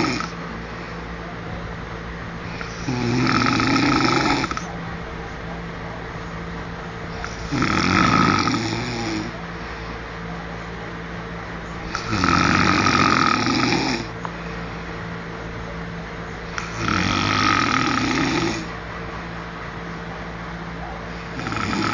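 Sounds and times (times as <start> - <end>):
man snoring: 0.0 - 0.4, 2.5 - 4.7, 7.2 - 9.4, 11.9 - 14.2, 16.6 - 18.7, 21.2 - 21.9
steady low hum: 0.0 - 21.9.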